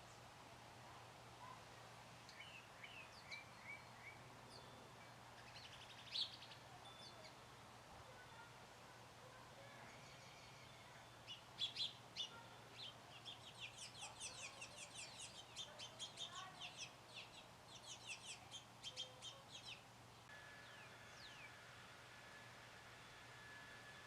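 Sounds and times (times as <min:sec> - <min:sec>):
bird chirping: 0:02.3 - 0:07.4, 0:09.8 - 0:19.9.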